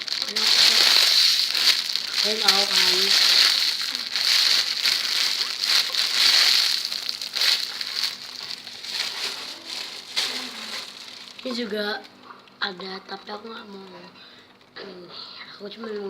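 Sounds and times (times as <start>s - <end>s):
foam and wrapping crinkling: 0.0s - 12.1s.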